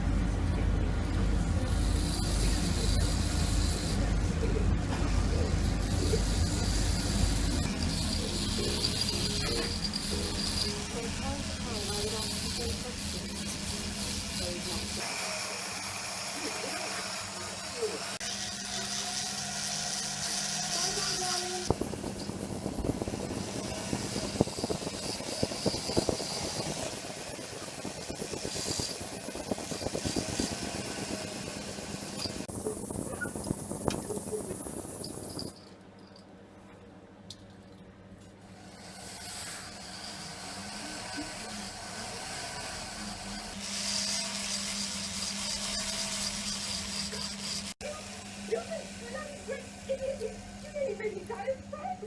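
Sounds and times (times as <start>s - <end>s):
small machine rattling: 5.0s - 15.1s, 16.4s - 36.2s.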